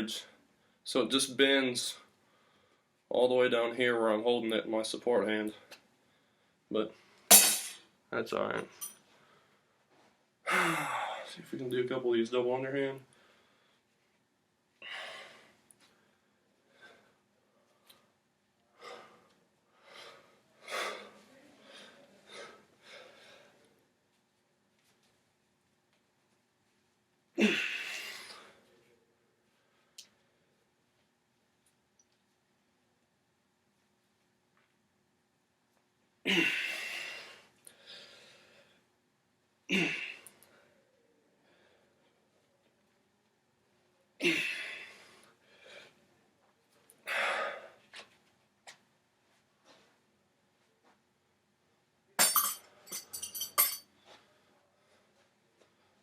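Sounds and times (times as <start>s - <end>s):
man breathing heavily: 13.1s - 14.0s, 14.8s - 17.8s, 18.7s - 23.7s, 36.3s - 38.9s, 39.8s - 42.4s, 44.2s - 46.1s, 47.0s - 48.1s.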